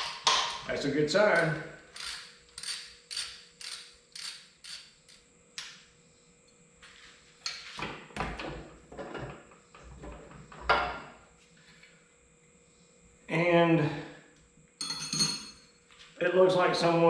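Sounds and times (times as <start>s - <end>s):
ratchet wrench strokes: 1.3s - 5.2s.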